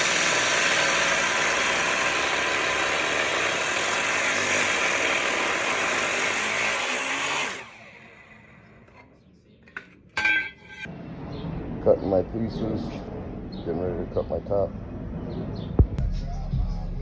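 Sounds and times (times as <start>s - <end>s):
power cutting tool whining: 0.0s - 9.0s.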